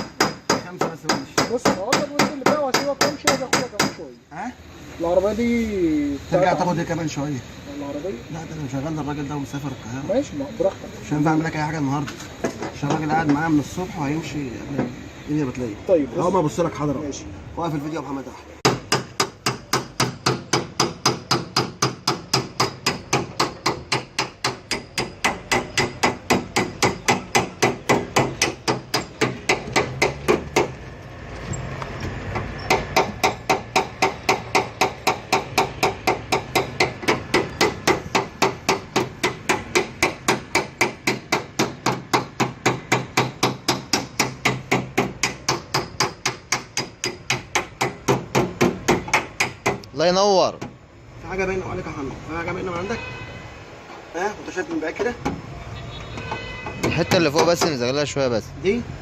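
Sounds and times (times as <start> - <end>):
hammer tapping sheet metal: 0.0 - 4.0, 56.7 - 57.8.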